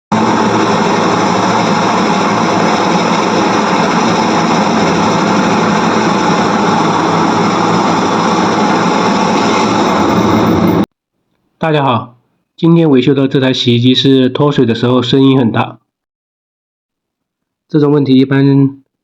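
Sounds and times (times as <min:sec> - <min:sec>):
washing machine spinning: 0:00.1 - 0:10.9.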